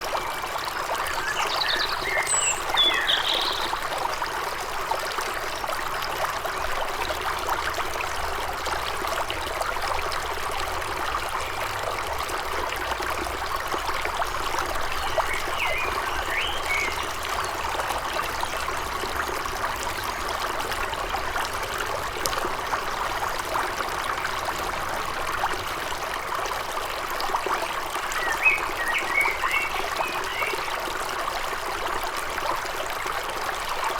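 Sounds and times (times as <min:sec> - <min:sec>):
stream babbling over stones: 0:00.0 - 0:33.9
bird chirps: 0:01.1 - 0:03.8, 0:15.0 - 0:18.7.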